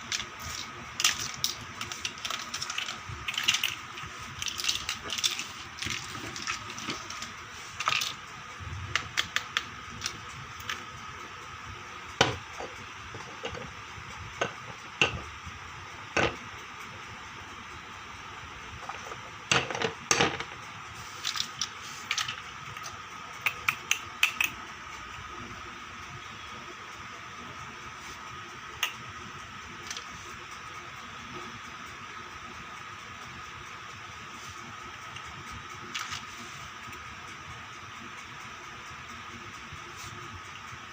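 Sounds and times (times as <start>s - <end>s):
faint steady background hum: 0.0s - 40.9s
toy kitchen pieces clattering: 0.1s - 8.2s, 21.2s - 22.4s.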